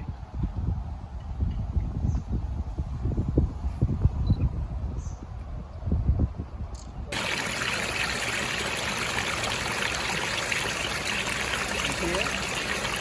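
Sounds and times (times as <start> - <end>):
stream water rushing: 7.1 - 13.0.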